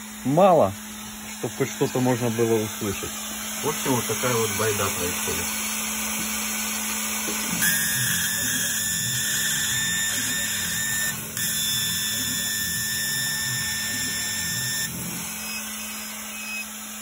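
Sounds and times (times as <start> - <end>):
laser cutter high-pitched squeal: 7.1 - 17.0.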